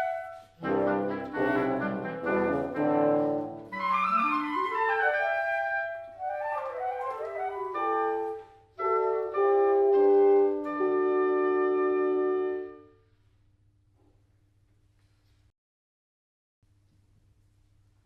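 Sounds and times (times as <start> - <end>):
wind quintet playing classical music: 0.0 - 13.0.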